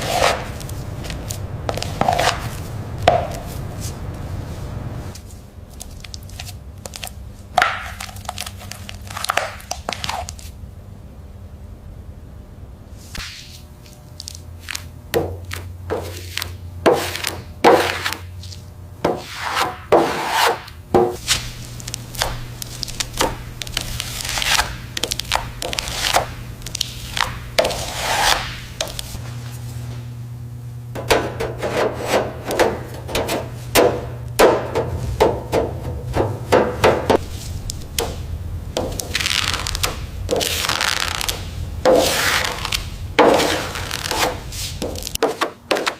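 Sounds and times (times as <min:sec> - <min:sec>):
hand tool scraping hard surface: 0:00.0 - 0:00.7, 0:15.5 - 0:18.2, 0:19.1 - 0:29.0, 0:31.4 - 0:34.0, 0:41.9 - 0:45.9
low steady hum: 0:00.0 - 0:45.9.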